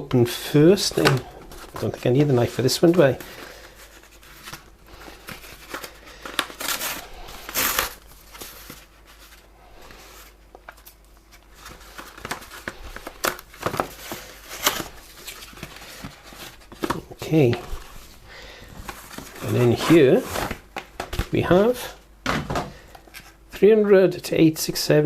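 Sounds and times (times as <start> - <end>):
plastic and cardboard crinkling: 0.0 - 23.9
packaging tearing: 0.7 - 9.4, 10.7 - 17.6.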